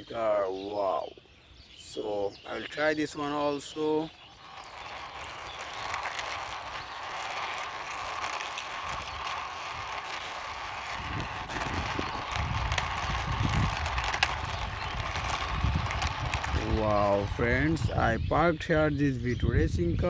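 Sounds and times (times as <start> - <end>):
toy car wheels rolling and rattling: 3.0 - 18.2.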